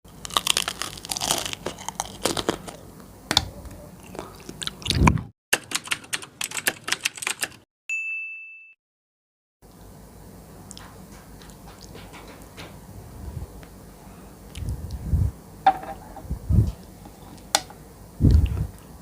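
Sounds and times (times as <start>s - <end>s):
close eating and chewing: 0.1s - 5.3s, 14.4s - 15.0s.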